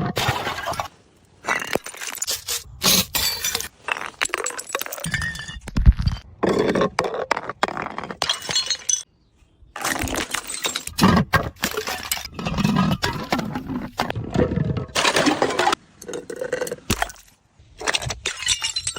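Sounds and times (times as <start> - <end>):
glass bottles smashing: 1.5 - 6.2, 8.2 - 9.1, 9.8 - 13.4, 18.2 - 18.9.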